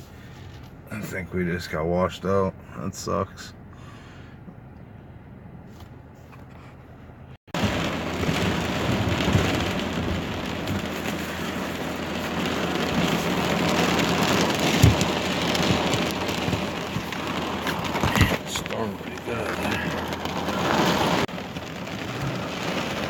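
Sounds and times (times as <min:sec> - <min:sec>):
heavy rain pouring: 0:07.5 - 0:23.0.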